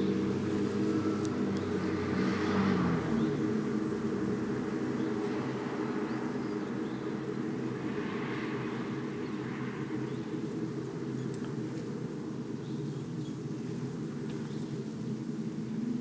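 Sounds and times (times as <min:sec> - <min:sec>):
low droning hum: 0:00.0 - 0:08.0.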